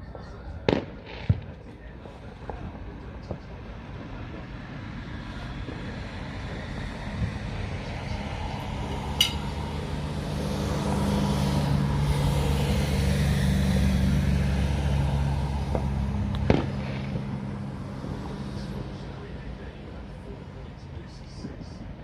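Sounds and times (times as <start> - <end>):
vehicle engine humming: 0.0 - 22.0
firework bangs: 0.2 - 7.0, 15.2 - 22.0.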